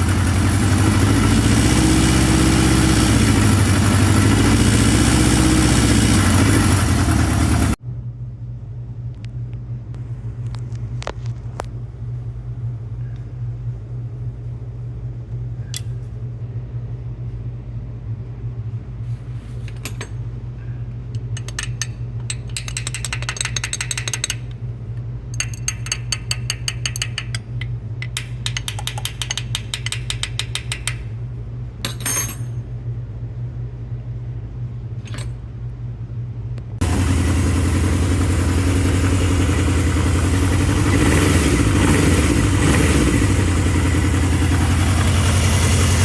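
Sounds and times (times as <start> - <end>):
motorcycle engine idling: 0.0 - 7.8, 36.8 - 46.0
rapid even clicking: 21.2 - 24.6, 25.4 - 31.1.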